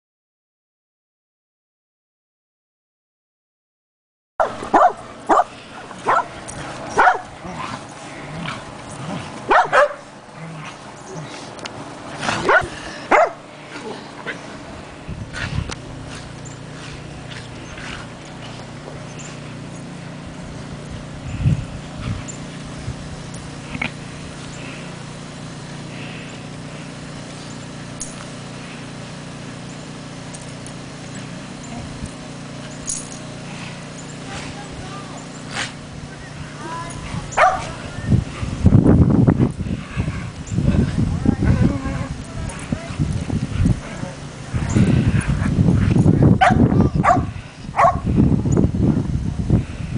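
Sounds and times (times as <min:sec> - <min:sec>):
dog barking: 0:04.4 - 0:06.3, 0:07.0 - 0:07.3, 0:09.5 - 0:10.0, 0:12.5 - 0:13.4, 0:37.4 - 0:37.8, 0:46.4 - 0:48.0
low hum: 0:04.4 - 0:49.9.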